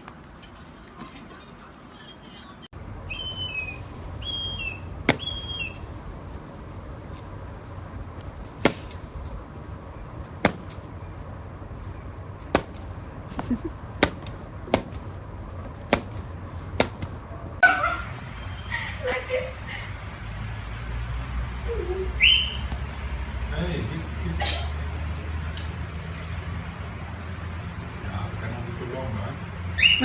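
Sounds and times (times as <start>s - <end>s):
parrot chirping: 3.0s - 5.9s
sharp taps: 15.9s - 17.2s.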